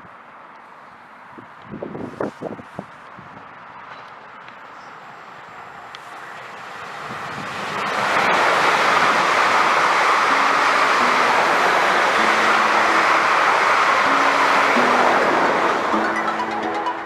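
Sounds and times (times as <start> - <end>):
train passing at speed: 3.4 - 17.0.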